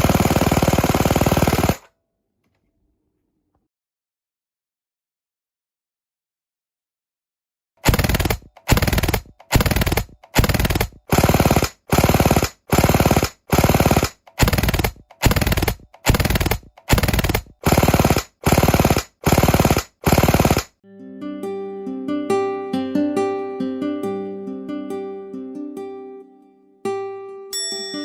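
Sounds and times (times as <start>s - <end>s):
airsoft gun firing bursts: 0.0s - 1.9s, 7.8s - 20.8s
ukulele-like music: 20.8s - 28.0s.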